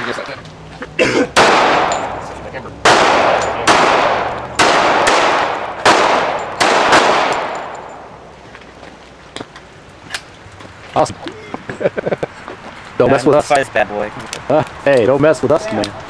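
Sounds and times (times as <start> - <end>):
gunshots with echo: 1.4 - 8.2.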